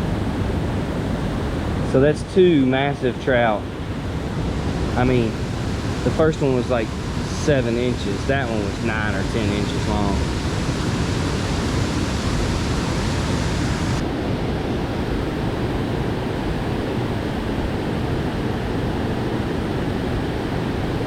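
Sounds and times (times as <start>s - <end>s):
flowing water rushing: 3.6s - 14.0s.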